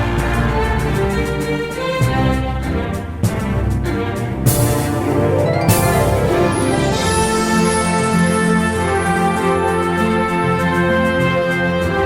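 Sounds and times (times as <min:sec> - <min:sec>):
layered sustained tones: 0:04.5 - 0:08.6.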